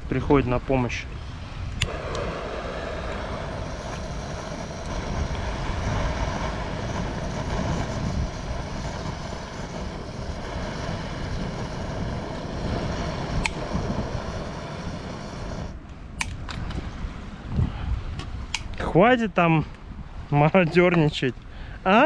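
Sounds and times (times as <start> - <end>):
small fan whirring: 1.2 - 15.9.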